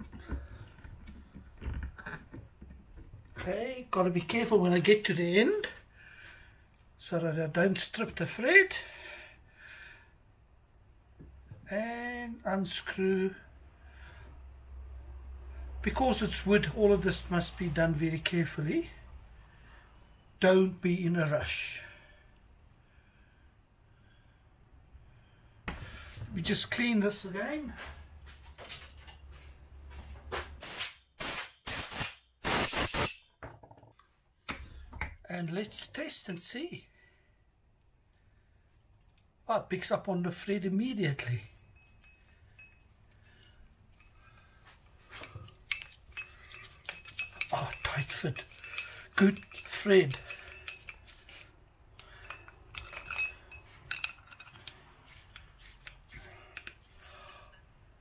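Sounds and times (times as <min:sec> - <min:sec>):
small metal parts clicking: 0:41.5 - 0:57.6
short metallic ringing chinks: 0:52.0 - 0:54.7.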